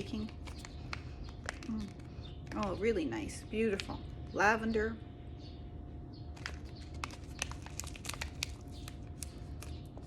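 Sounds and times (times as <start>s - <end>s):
packaging crinkling: 0.0s - 2.7s, 6.3s - 10.0s
faint background hum: 0.0s - 10.0s.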